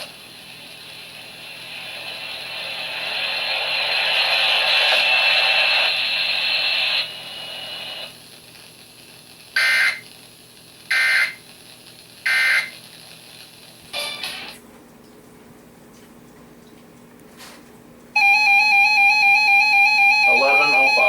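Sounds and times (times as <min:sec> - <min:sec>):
loud hiss-like noise: 0:00.0 - 0:14.6
screechy digital data bursts: 0:09.6 - 0:10.0, 0:10.9 - 0:11.4, 0:12.2 - 0:12.8.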